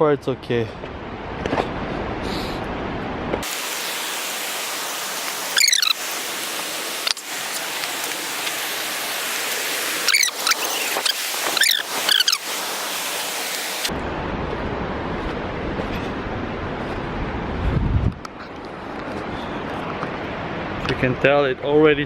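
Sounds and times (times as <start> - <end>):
waterfall rushing: 3.4 - 13.9
high sliding squeals: 5.4 - 6.2, 9.6 - 13.9.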